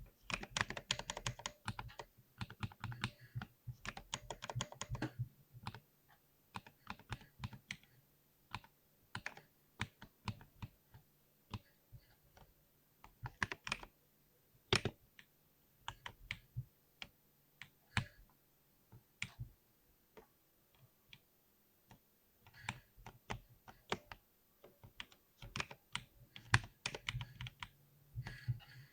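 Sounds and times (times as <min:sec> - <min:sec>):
mechanical keyboard typing: 0:00.3 - 0:03.1, 0:03.8 - 0:05.8, 0:13.3 - 0:13.9, 0:24.9 - 0:27.7.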